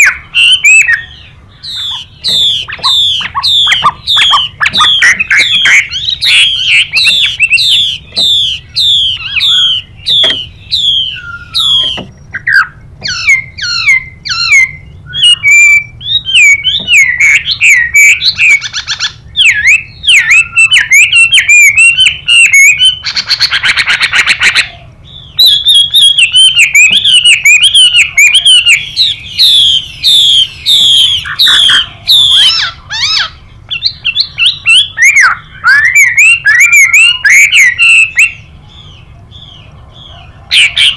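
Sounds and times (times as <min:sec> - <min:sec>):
bird singing whistled notes: 0:00.0 - 0:40.9
bird harsh buzzing rasp: 0:01.6 - 0:12.3.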